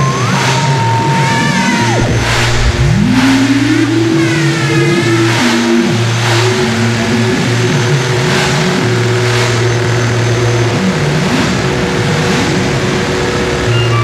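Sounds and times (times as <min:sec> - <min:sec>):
low electronic buzzing drone: 0:01.5 - 0:13.8
sliding electronic pitches: 0:01.6 - 0:06.3
electronic hiss swells: 0:01.8 - 0:04.2.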